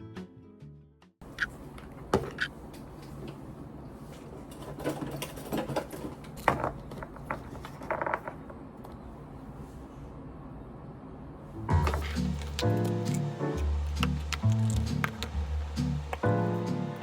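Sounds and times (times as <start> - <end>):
objects clicking and knocking: 4.4 - 8.6, 11.7 - 16.3.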